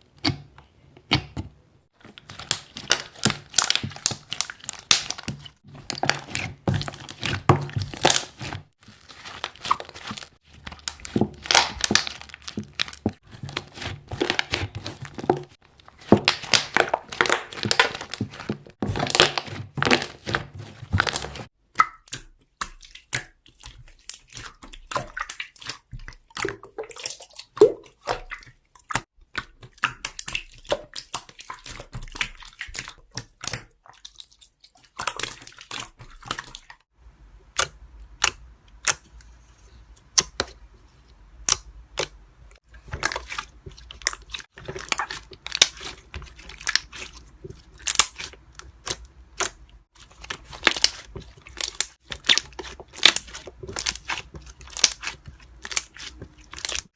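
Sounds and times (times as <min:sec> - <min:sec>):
slime squished by hand: 0:02.0 - 0:36.7, 0:41.4 - 0:56.9
air bubbles crackling and popping: 0:02.2 - 0:22.1.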